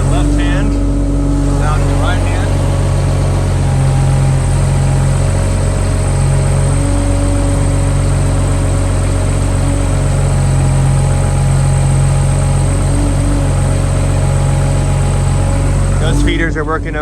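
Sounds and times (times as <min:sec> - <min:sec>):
diesel engine running: 0:00.0 - 0:17.0
steady mid-pitched tone: 0:00.0 - 0:17.0.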